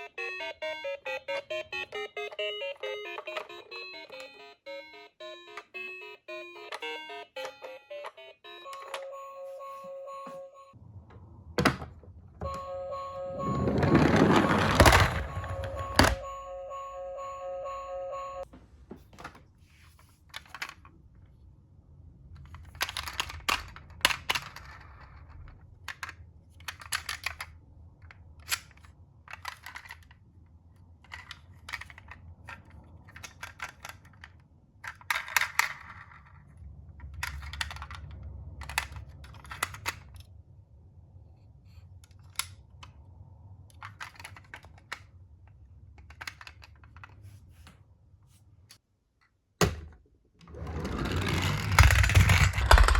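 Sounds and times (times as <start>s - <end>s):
plastic toy clicking and tapping: 46.0s - 47.1s.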